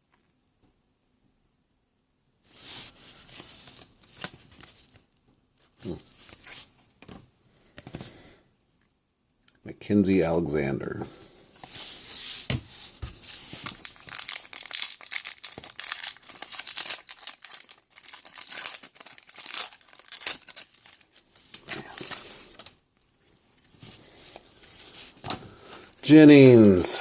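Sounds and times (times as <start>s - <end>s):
trading cards rustling: 12.9s - 27.0s
plastic wrapper crinkling: 13.3s - 25.0s.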